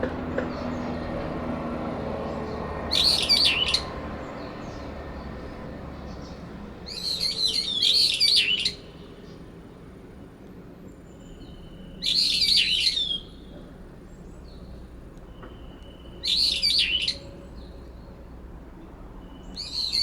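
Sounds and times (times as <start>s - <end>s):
birds making high wavering calls: 2.2s - 4.6s, 6.2s - 9.4s, 11.2s - 13.6s, 15.3s - 17.9s, 19.2s - 20.0s.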